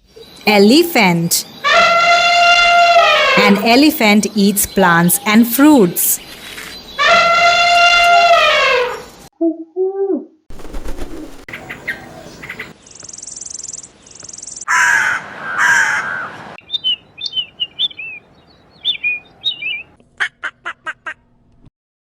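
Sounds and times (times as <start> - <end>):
short high bird chirps: 16.6 - 19.9.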